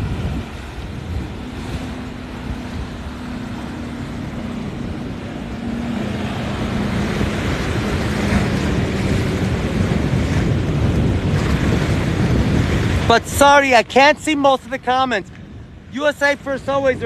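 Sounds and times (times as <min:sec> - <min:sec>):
engine humming: 0:00.0 - 0:12.7
surf: 0:00.0 - 0:17.0
wind: 0:00.0 - 0:17.0.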